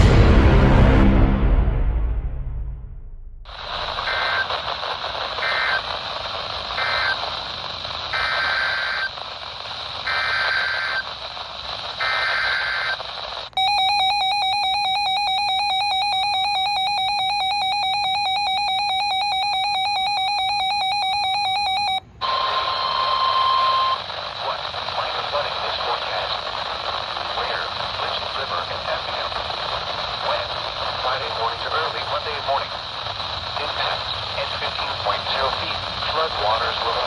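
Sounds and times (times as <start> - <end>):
warbling digital data bursts: 3.5 - 22.0
radio hiss: 3.5 - 37.0
loud steady alert tone: 13.6 - 22.0.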